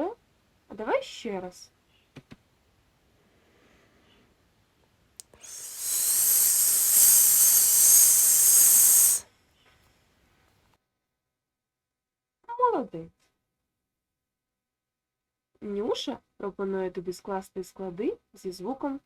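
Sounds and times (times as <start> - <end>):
steady hiss: 5.2 - 9.2.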